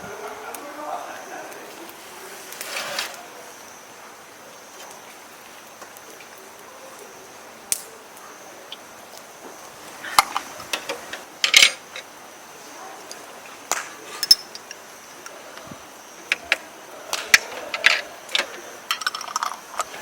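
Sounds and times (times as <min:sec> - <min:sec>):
utensils clinking on dishes: 0:14.1 - 0:14.8, 0:17.2 - 0:20.0.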